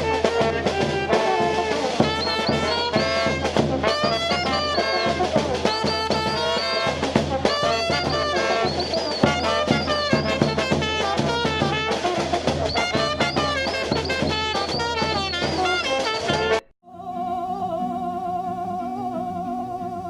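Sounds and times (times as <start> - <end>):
jazzy music with brass and drums: 0.0 - 16.7
soft sustained melody: 16.9 - 20.0.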